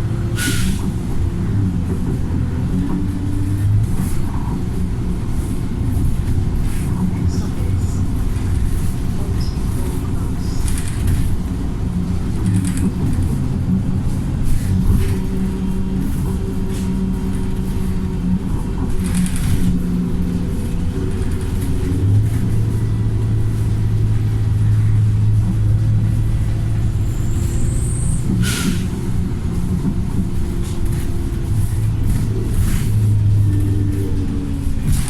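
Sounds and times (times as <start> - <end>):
bus diesel engine droning: 0.0 - 35.0
air brake hiss: 0.4 - 0.8, 28.4 - 28.9.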